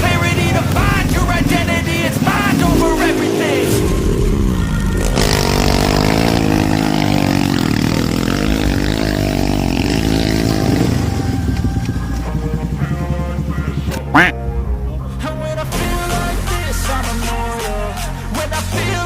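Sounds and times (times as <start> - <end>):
dirt bike engine revving: 0.0 - 14.4.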